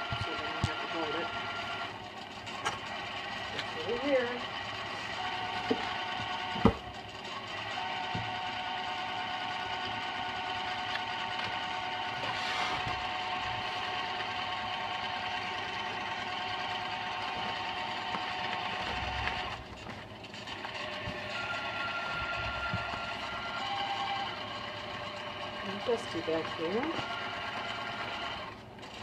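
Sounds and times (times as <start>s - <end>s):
constant tones: 0.0s - 28.4s
mechanical noise from speakers: 4.8s - 24.4s.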